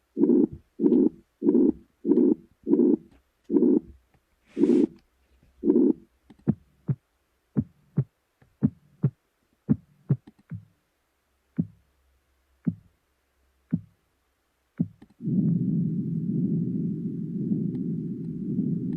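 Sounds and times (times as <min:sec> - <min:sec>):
soft low thumps: 0:07.6 - 0:10.8, 0:11.6 - 0:11.9, 0:12.6 - 0:13.0, 0:13.7 - 0:14.0, 0:14.8 - 0:18.9.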